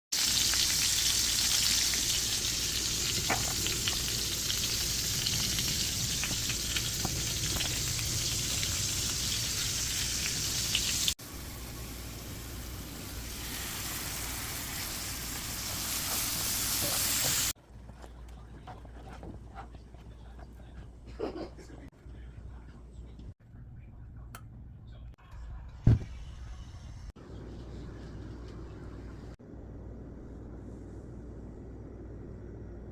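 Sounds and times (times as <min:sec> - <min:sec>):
food sizzling in a hot pan: 0:00.2 - 0:17.6.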